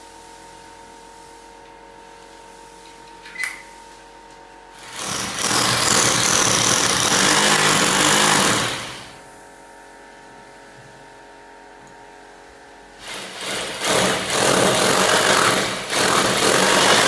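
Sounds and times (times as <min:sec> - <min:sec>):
electric drill whining: 0:04.8 - 0:09.2, 0:13.0 - 0:17.0.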